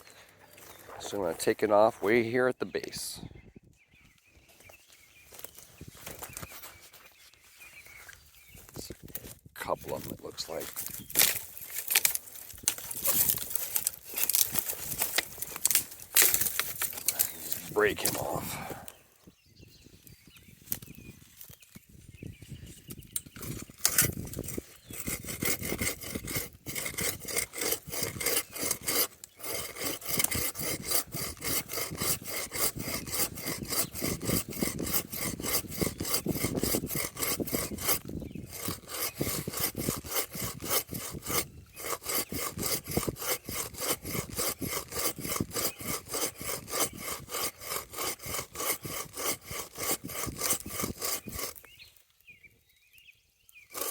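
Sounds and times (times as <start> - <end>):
hand saw cutting wood: 9.8 - 18.9, 23.3 - 51.8.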